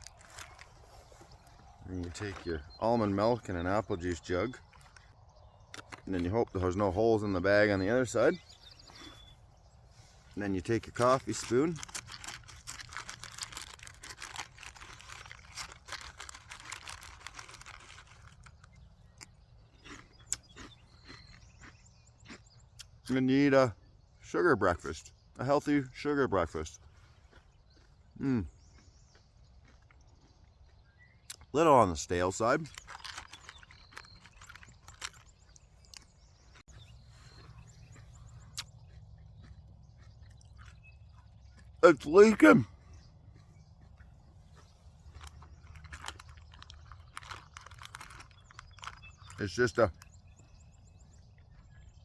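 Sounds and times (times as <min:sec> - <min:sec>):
plastic bag crinkling: 0:00.0 - 0:02.4, 0:10.6 - 0:18.8, 0:32.6 - 0:36.0, 0:45.2 - 0:50.1
faint bird chirps: 0:00.0 - 0:11.6, 0:16.8 - 0:52.0
low outdoor background: 0:00.0 - 0:52.0
cereal rustling as spoon stirs: 0:10.8 - 0:18.8, 0:32.6 - 0:35.6, 0:45.2 - 0:49.5.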